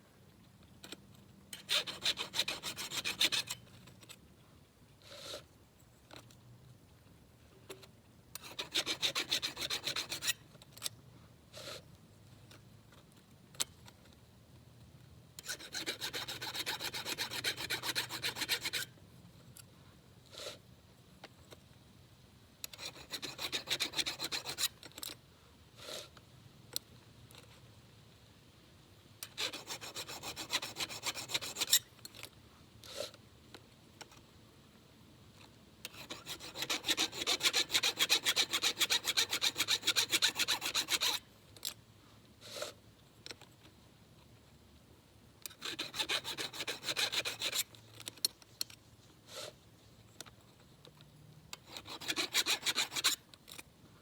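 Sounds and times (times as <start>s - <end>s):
file rasping on saw chain: 1.6s - 3.6s, 8.4s - 10.4s, 15.4s - 18.9s, 22.7s - 24.8s, 29.2s - 31.9s, 35.9s - 41.2s, 45.5s - 48.3s, 51.5s - 53.6s.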